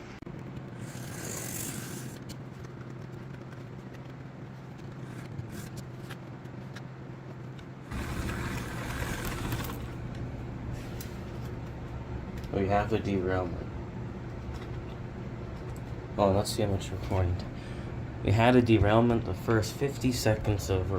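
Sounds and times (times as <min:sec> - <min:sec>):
electric motor hum: 0:00.6 - 0:02.4, 0:07.8 - 0:11.5
wheels rolling over rails: 0:00.8 - 0:02.4, 0:07.9 - 0:10.0.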